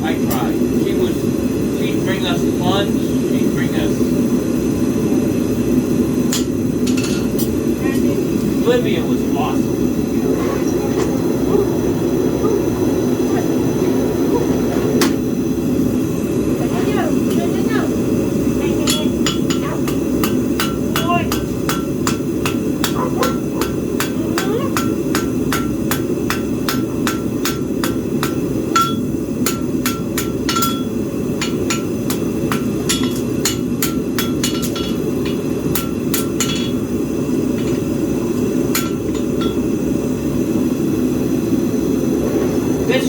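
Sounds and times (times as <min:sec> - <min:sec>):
hammer striking iron on anvil: 0:06.3 - 0:07.6, 0:18.8 - 0:36.9, 0:37.5 - 0:37.9, 0:38.7 - 0:39.8.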